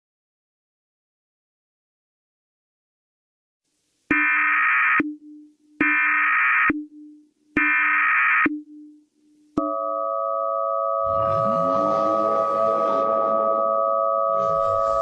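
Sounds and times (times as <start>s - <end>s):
loud attention tone: 9.6s - 15.0s.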